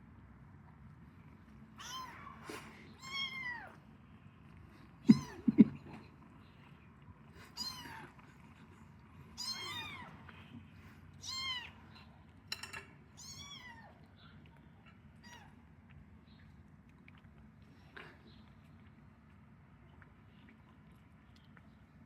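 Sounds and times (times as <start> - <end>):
kittens mewing: 5.0 - 6.1.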